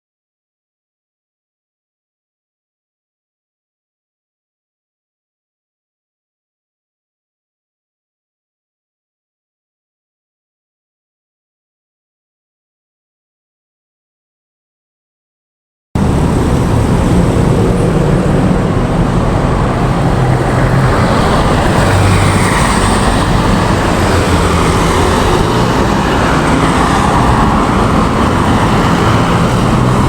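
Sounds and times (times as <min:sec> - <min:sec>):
motor vehicle engine hum: 0:16.0 - 0:30.0.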